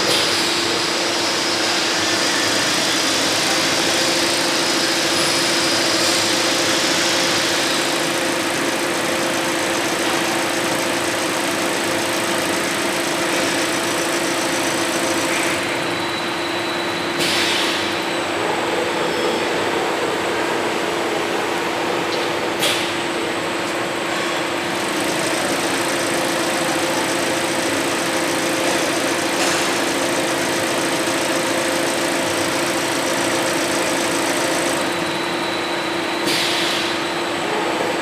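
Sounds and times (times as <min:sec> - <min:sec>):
sewing machine humming: 0:00.0 - 0:16.6, 0:23.9 - 0:36.5.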